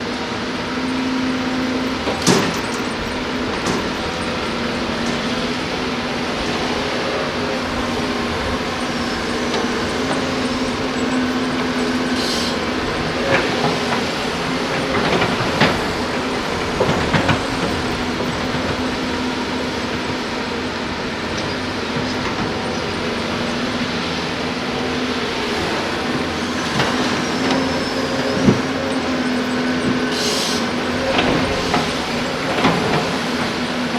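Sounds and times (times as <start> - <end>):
heavy machinery diesel engine running: 0.0 - 33.9
air hiss: 12.2 - 12.6, 30.1 - 30.7.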